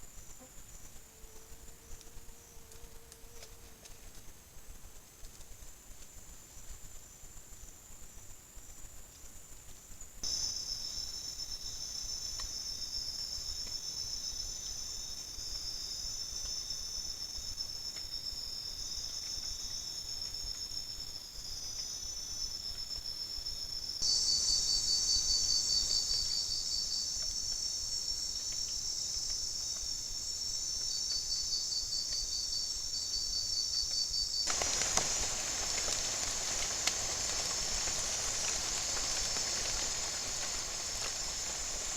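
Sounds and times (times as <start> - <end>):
crickets trilling: 10.2 - 41.9
broad hiss: 34.4 - 41.9.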